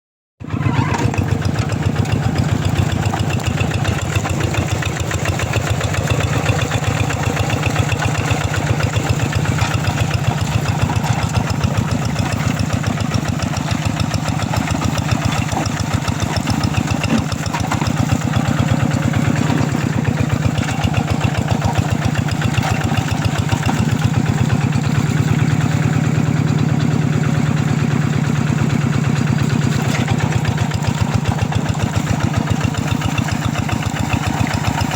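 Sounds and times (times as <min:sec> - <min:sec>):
diesel engine chugging: 0:00.4 - 0:34.9.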